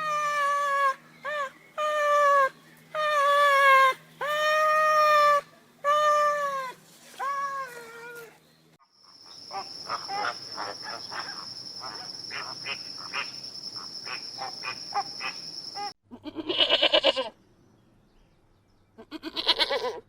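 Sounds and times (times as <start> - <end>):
faint chirping: 8.9 - 16.0.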